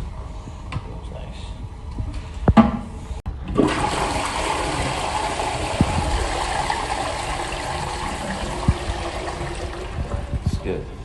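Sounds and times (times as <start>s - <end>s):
toilet flushing: 3.4s - 11.0s.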